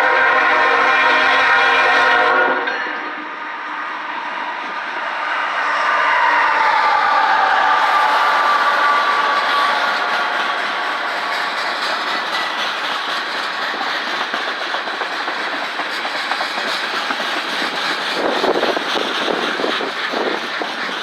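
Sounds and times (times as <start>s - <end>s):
freight train wheels clattering: 7.2s - 21.0s.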